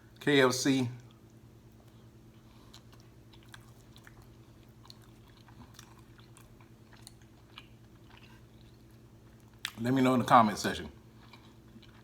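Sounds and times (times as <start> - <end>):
steady low hum: 0.0 - 12.0
wet chewing clicks and smacks: 1.0 - 9.9, 11.2 - 12.0.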